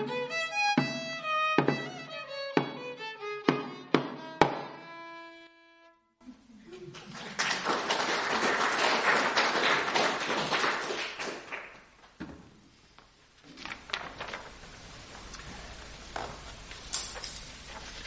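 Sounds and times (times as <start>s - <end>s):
audience applauding: 6.6s - 12.2s.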